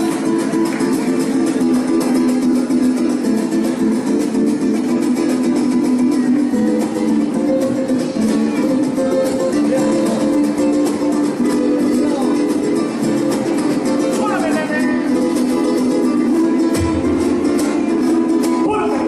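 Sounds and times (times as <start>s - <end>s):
mariachi ensemble playing: 0.0s - 19.0s.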